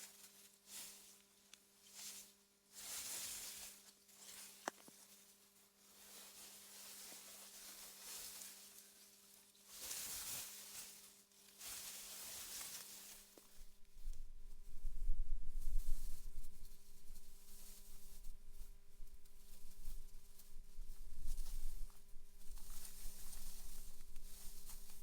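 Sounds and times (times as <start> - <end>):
wind blowing through grass: 13.5 - 25.0.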